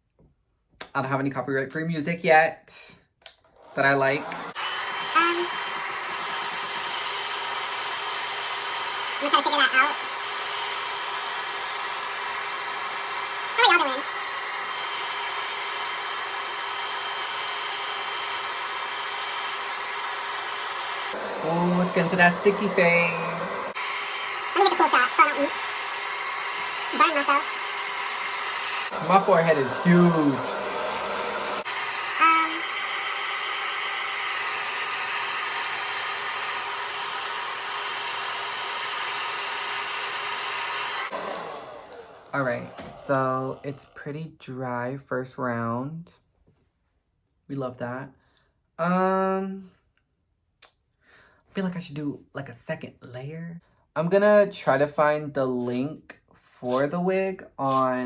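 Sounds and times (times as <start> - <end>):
hair dryer running: 3.6 - 44.0.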